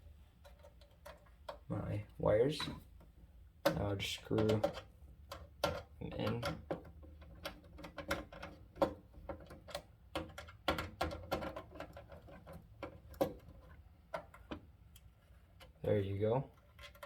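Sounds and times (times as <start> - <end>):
screwdriver clicking and scraping: 16.6 - 17.0.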